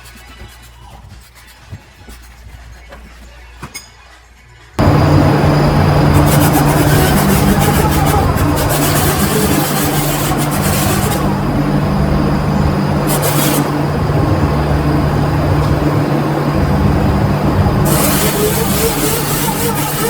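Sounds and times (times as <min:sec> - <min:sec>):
low machine hum: 0:04.8 - 0:20.0.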